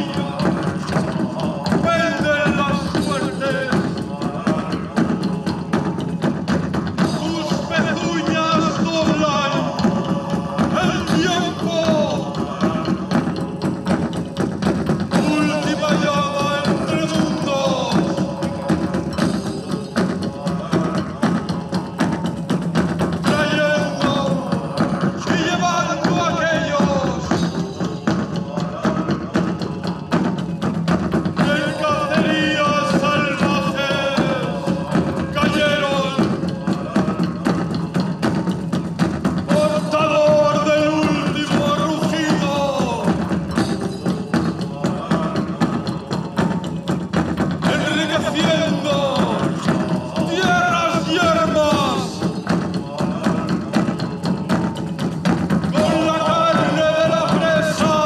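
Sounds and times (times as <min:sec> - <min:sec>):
busy percussion: 0:00.0 - 0:58.0.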